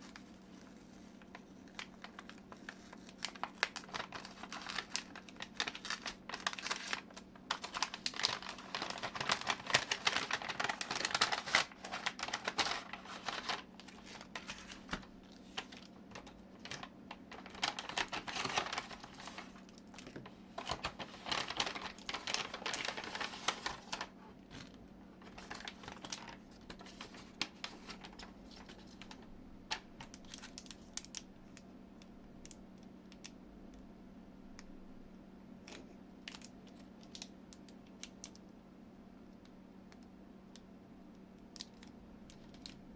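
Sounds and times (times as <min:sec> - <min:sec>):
paper and plastic crinkling: 0:00.0 - 0:31.2.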